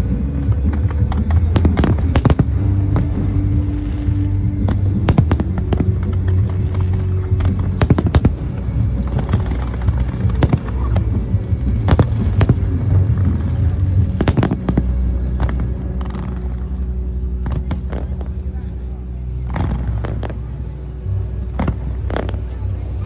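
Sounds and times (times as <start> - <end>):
low rumble: 0.0 - 23.0
fireworks bangs and crackles: 0.1 - 16.4.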